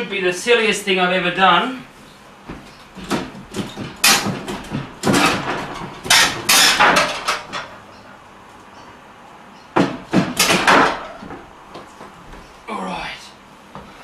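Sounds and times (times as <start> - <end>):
heavy unit scraping: 2.1 - 7.9
heavy unit knocking: 2.4 - 8.0, 9.7 - 12.5.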